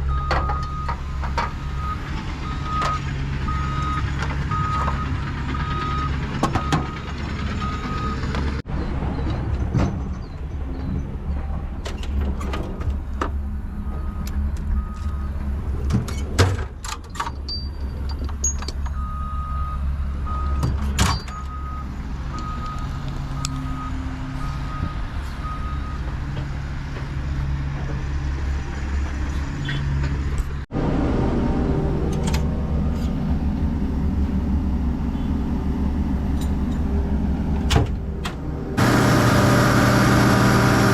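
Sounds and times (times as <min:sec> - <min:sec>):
diesel engine running: 0:00.0 - 0:08.6, 0:30.0 - 0:40.9.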